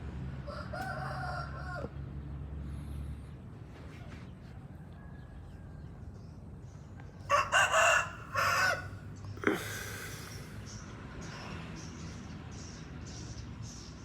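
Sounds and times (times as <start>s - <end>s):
rooster crowing: 0.4s - 2.0s, 7.3s - 9.1s.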